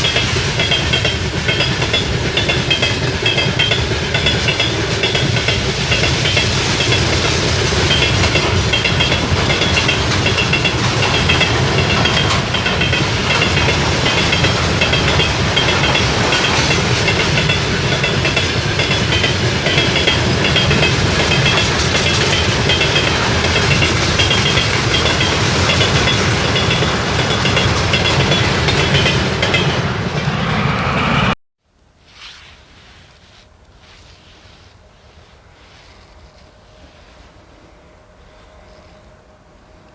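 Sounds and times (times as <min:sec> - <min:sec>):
high steady ringing: 0:00.0 - 0:29.8
train wheels clattering on rails: 0:00.0 - 0:30.9
faint wind: 0:00.0 - 0:39.9.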